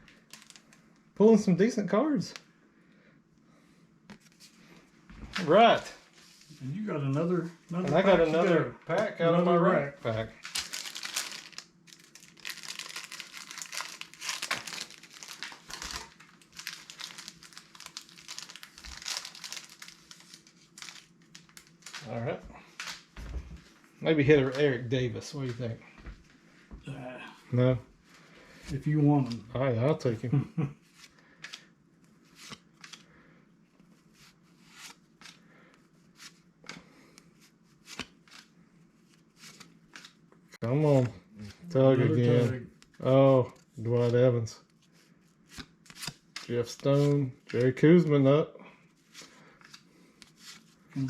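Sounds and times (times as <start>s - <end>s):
cellophane wrapper crinkling and tearing: 0.0s - 0.8s, 10.1s - 22.2s
cards being flipped through: 0.1s - 0.8s, 10.4s - 23.2s, 30.9s - 33.1s, 33.8s - 44.2s, 44.8s - 47.7s, 49.0s - 51.0s.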